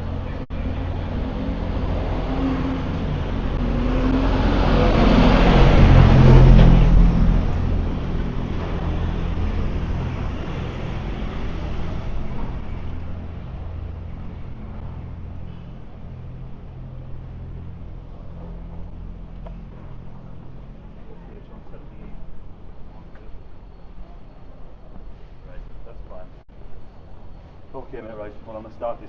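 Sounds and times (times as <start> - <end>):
vehicle passing by: 0.0 - 23.8
low traffic hum: 0.0 - 29.0.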